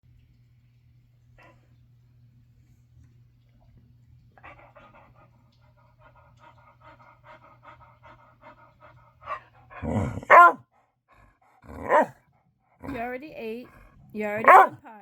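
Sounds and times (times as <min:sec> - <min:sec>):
dog grumbling: 0:09.3 - 0:10.6, 0:11.2 - 0:12.2, 0:12.8 - 0:14.8
dog barking: 0:10.0 - 0:10.6, 0:11.7 - 0:12.2, 0:14.4 - 0:14.8.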